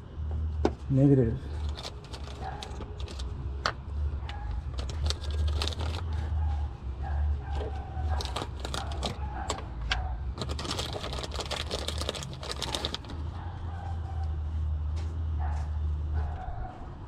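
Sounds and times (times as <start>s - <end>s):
small hard parts clinking: 1.5s - 6.3s, 8.1s - 9.7s, 10.4s - 13.3s.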